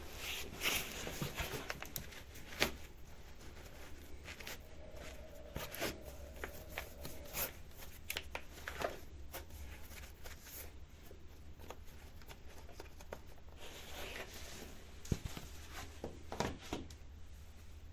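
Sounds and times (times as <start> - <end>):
rushing scrape: 3.9 - 8.1.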